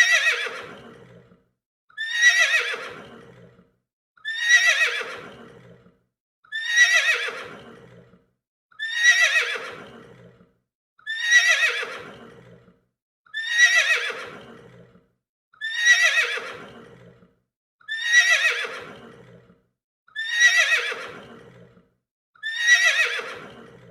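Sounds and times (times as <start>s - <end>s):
horse whinnying: 0.0s - 1.3s, 2.0s - 3.6s, 4.2s - 5.8s, 6.5s - 8.1s, 8.8s - 10.4s, 11.1s - 12.6s, 13.3s - 14.9s, 15.6s - 17.2s, 17.9s - 19.5s, 20.2s - 21.7s, 22.4s - 23.9s.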